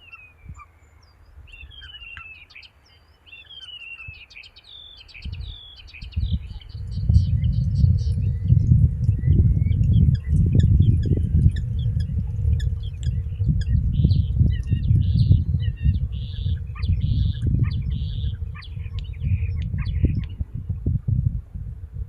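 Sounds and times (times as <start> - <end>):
starling singing: 5.3 - 20.4.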